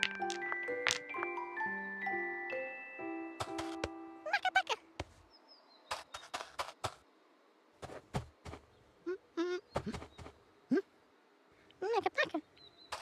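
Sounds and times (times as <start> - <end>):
stones clicking together: 0.0 - 1.3.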